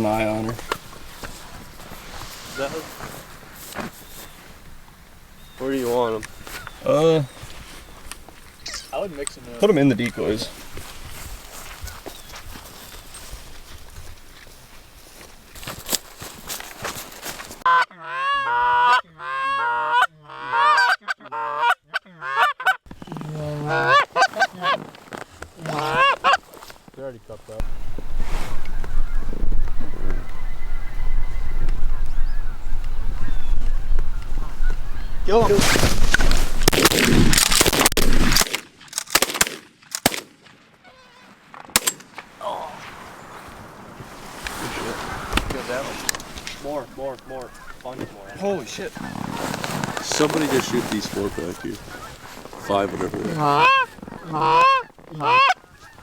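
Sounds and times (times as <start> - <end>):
rustling: 0.0 - 17.7, 22.9 - 56.0
geese honking and clucking: 17.6 - 26.7, 40.8 - 41.4, 44.9 - 56.0.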